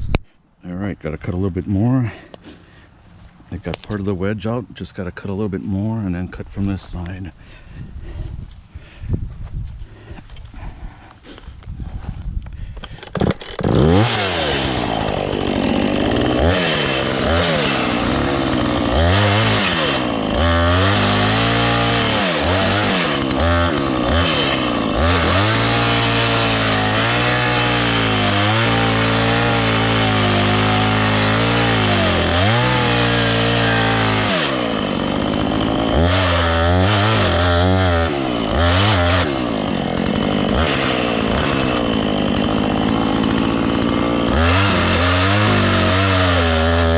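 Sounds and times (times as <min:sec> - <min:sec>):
chainsaw cutting wood: 0:12.5 - 0:46.9.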